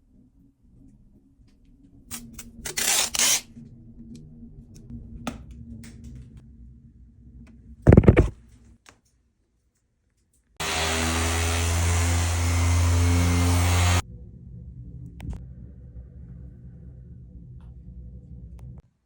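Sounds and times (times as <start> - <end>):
loud knock: 7.9 - 8.3.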